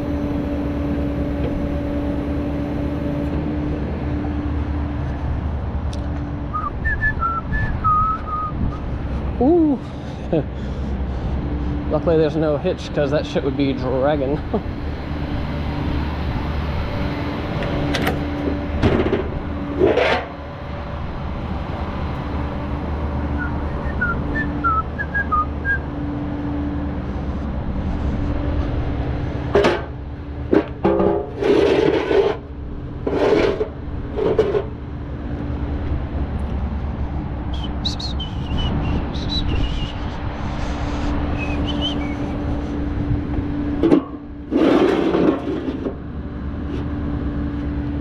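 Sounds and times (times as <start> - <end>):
winch hum: 0.0 - 5.8, 6.4 - 35.2, 35.8 - 46.2
tow truck engine running: 0.0 - 48.0
scraping and knocking: 17.9 - 20.4, 29.5 - 34.7, 43.8 - 46.0.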